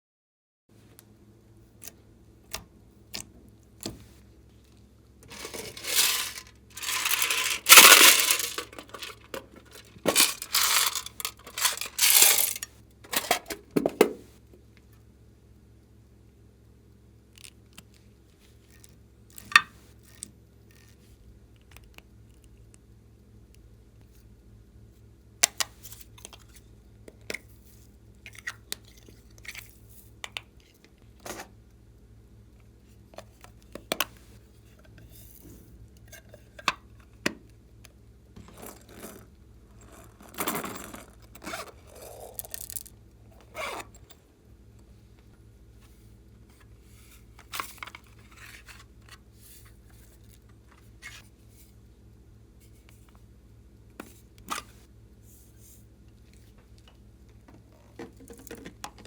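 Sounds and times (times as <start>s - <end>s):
small objects clicking and tapping: 5.2s - 12.7s
scraping and rustling: 5.2s - 13.5s.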